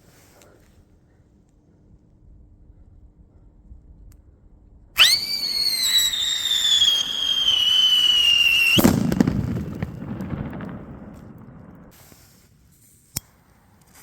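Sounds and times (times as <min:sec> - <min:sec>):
firework bang with rumbling echo: 0:05.0 - 0:11.9
whistling firework: 0:05.0 - 0:12.8.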